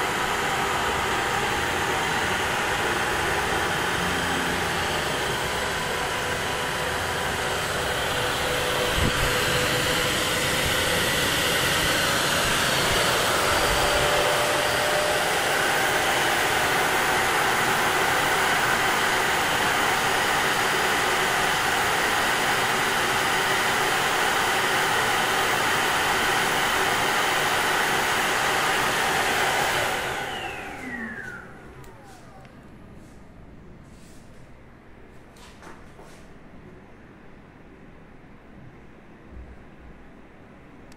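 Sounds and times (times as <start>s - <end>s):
vacuum motor whirring: 0.0s - 33.2s.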